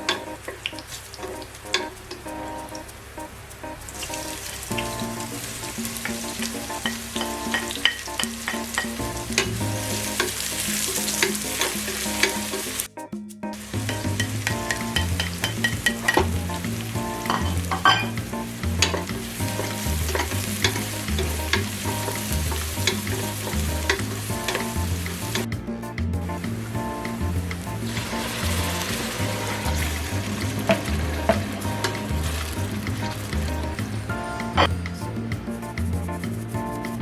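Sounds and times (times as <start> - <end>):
food sizzling in hot oil: 0.0 - 12.9, 13.6 - 25.5, 26.2 - 34.8
music with stepping bass line: 4.7 - 37.0
utensil clicking against pot: 13.8 - 16.6, 18.8 - 25.5.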